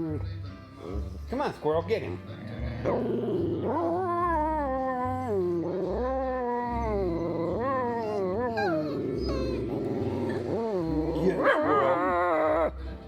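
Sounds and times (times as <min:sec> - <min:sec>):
dog howling whines: 0:03.6 - 0:12.7.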